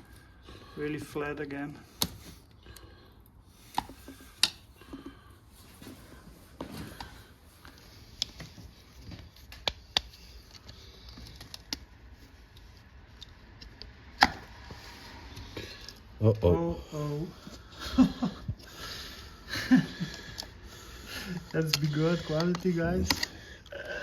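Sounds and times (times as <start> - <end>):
small parts clicking and tapping: 7.6 - 11.9, 21.2 - 23.7.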